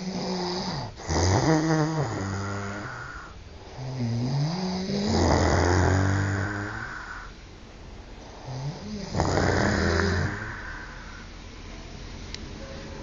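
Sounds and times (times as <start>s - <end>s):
loud snoring: 0.0s - 7.3s, 8.2s - 11.1s.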